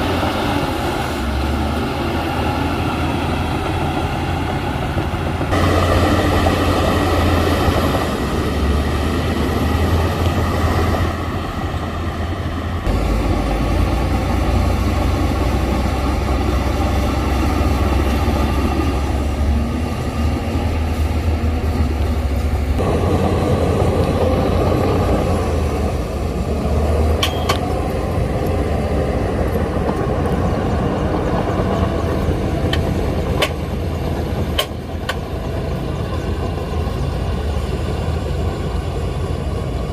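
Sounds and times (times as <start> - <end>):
heavy diesel engine running: 0.0 - 39.9
sharp metallic clanks: 27.2 - 27.7.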